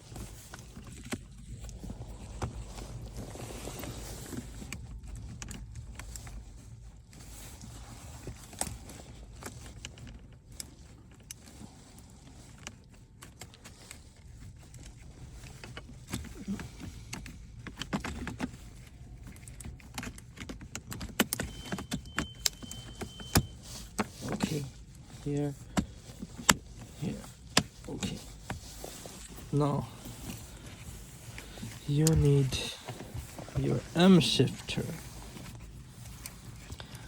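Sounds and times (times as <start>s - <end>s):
low cabin hum: 0.0s - 6.5s, 21.5s - 37.0s.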